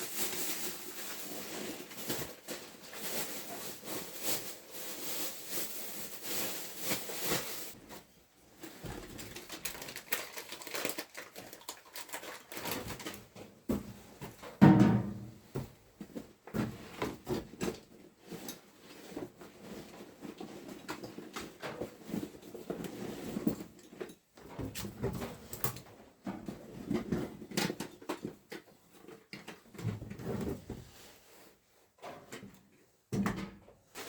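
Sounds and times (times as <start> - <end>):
rustling: 0.0 - 13.2.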